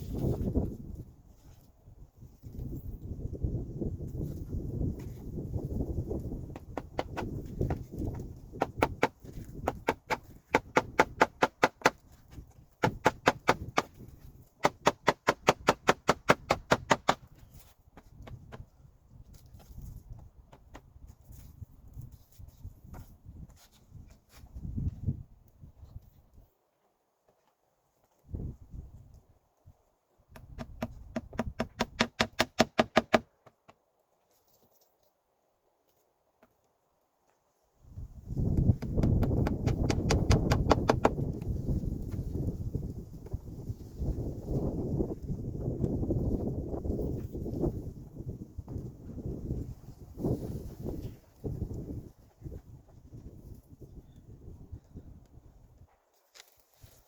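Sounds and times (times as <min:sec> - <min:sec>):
hammer driving nail into wood: 0:06.5 - 0:12.0, 0:12.8 - 0:14.0, 0:14.6 - 0:17.3, 0:30.4 - 0:33.3, 0:38.6 - 0:41.3
hammer blows on wood: 0:38.5 - 0:41.4.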